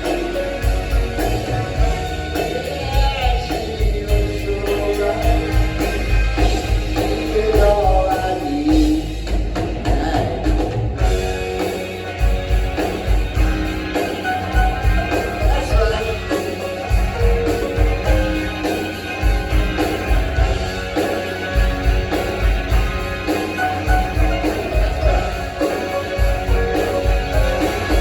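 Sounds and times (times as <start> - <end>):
person singing: 0.0 - 6.0, 7.0 - 10.8, 14.9 - 18.6
electric guitars: 0.0 - 28.0
live rock band playing: 0.0 - 28.0
steady drum beat: 0.0 - 28.0.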